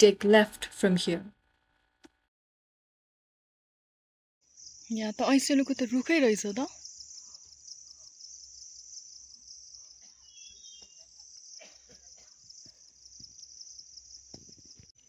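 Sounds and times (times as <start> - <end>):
insects trilling: 4.4 - 15.0.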